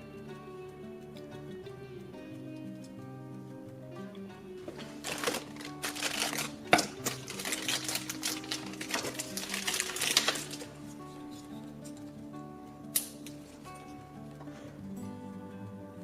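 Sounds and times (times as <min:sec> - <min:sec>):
background music: 0:00.0 - 0:16.0
plastic toy pieces clicking: 0:05.1 - 0:10.7.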